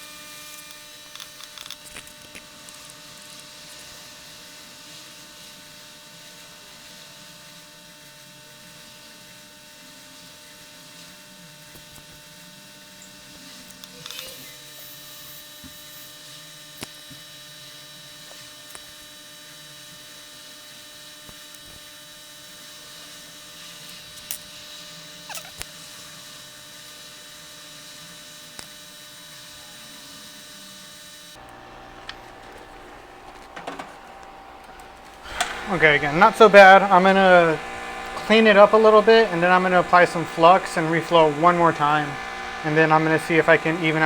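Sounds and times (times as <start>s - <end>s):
electrical hum: 21.0s - 44.0s.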